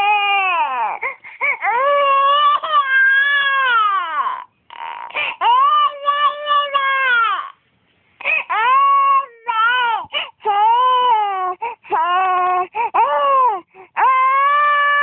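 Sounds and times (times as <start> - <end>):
young child crying: 8.5 - 15.0.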